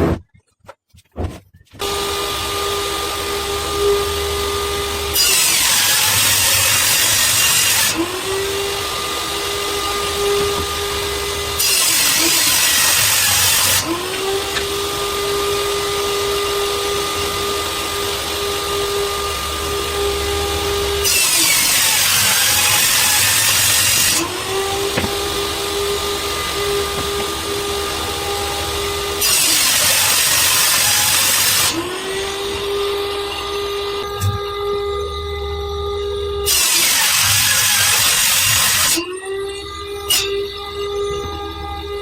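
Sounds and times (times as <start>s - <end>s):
power tool motor whining: 1.8s - 35.2s
power tool cutting wood: 1.8s - 42.0s.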